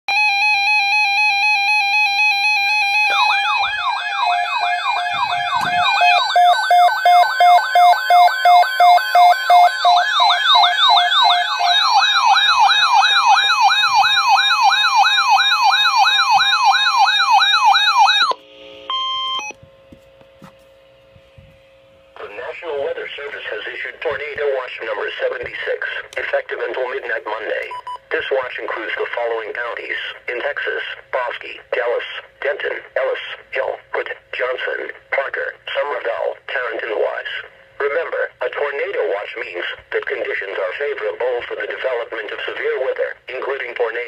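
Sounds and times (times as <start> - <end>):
electronic siren wail: 0.1 - 19.6.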